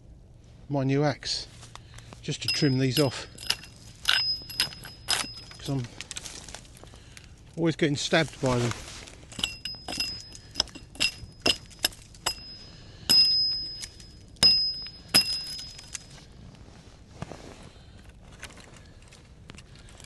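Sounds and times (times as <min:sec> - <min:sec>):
metallic ring of axe head: 0:02.3 - 0:06.0, 0:09.3 - 0:16.2.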